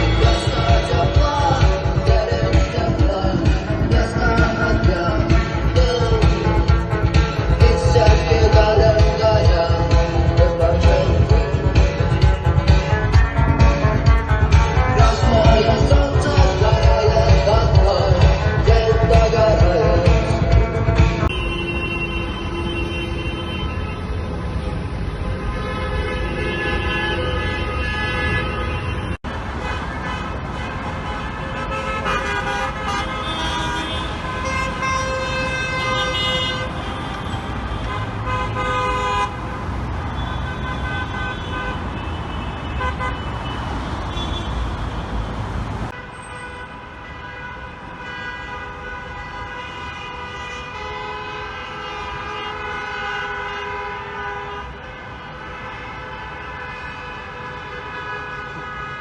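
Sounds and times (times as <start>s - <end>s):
car horns honking: 0.0s - 45.1s, 45.9s - 59.0s
traffic rumble: 0.0s - 59.0s.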